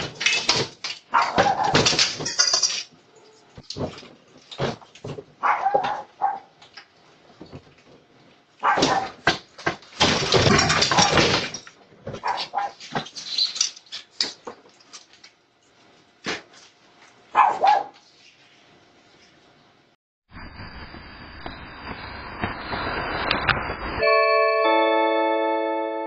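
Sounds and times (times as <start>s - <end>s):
dog barking: 1.1s - 1.8s, 5.4s - 6.6s, 8.6s - 9.2s, 12.2s - 12.8s, 17.3s - 18.0s.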